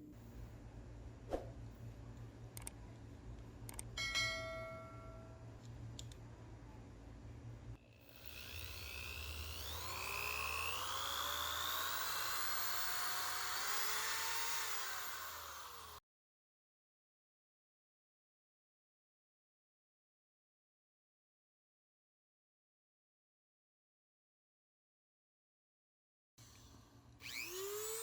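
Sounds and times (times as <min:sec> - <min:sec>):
small electric motor whining: 0:07.8 - 0:16.0, 0:26.4 - 0:28.0.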